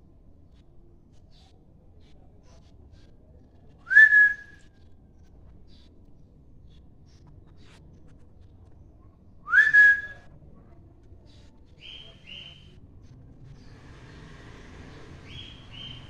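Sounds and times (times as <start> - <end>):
parrot whistling: 9.5 - 10.2.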